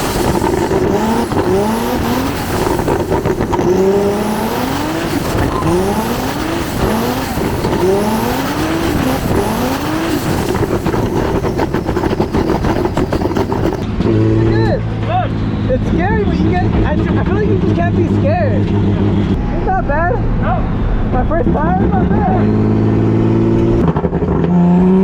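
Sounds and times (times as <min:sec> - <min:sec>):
tyre noise: 0:00.0 - 0:19.8
car engine revving: 0:00.0 - 0:25.0.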